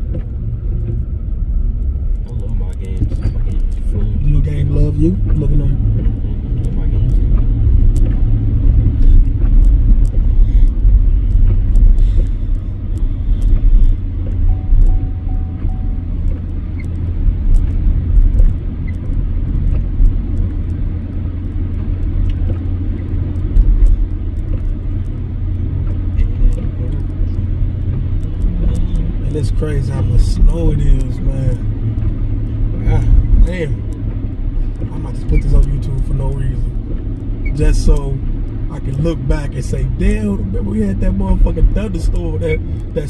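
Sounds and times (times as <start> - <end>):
truck engine and tyre rumble: 0.0 - 43.0.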